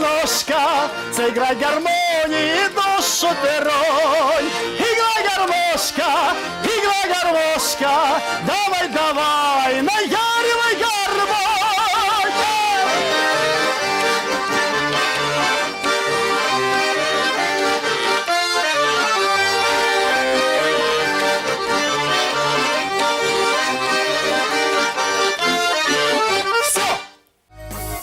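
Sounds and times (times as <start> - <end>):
accordion folk tune: 0.0 - 28.0
rhythmic bass accompaniment: 12.1 - 28.0.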